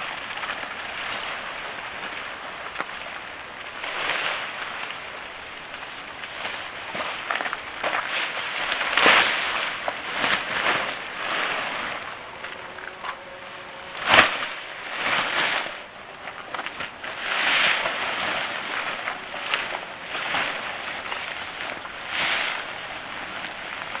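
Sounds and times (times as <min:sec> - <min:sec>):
tent fabric rustling: 0:00.0 - 0:24.0.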